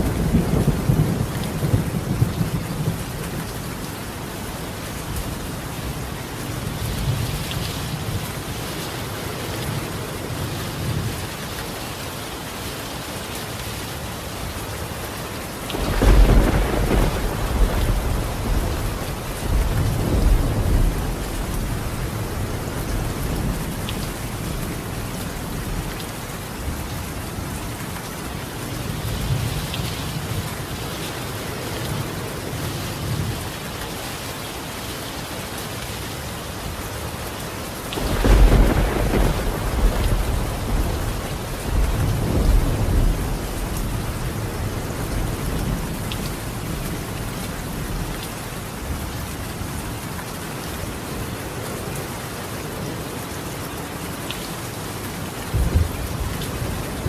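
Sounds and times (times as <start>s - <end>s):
thunder rumbling: 0.0s - 3.5s, 15.7s - 25.9s, 38.0s - 47.0s
rain on a tiled roof: 0.0s - 57.0s.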